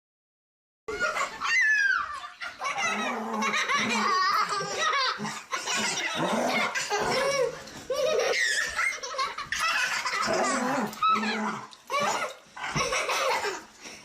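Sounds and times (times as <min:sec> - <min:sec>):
high giggling laughter: 0:00.9 - 0:13.7
deep belly laughs: 0:02.4 - 0:13.7.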